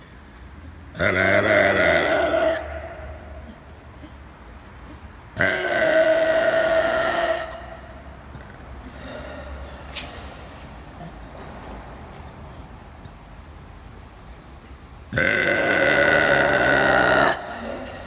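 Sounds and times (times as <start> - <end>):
low background noise: 0.0 - 18.0
woman belching: 1.0 - 3.6, 5.4 - 7.7, 15.2 - 18.0.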